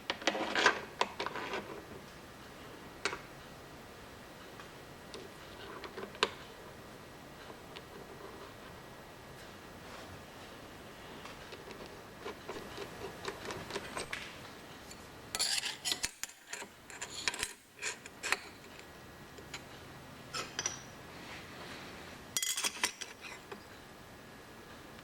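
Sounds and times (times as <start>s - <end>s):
small steel parts clinking: 15.3s - 18.4s, 22.4s - 23.2s.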